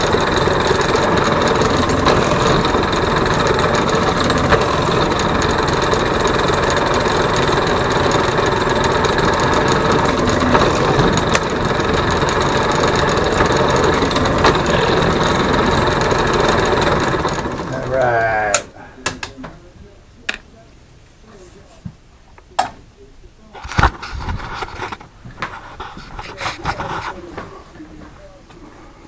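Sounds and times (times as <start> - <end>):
engine idling: 0.0 - 18.6.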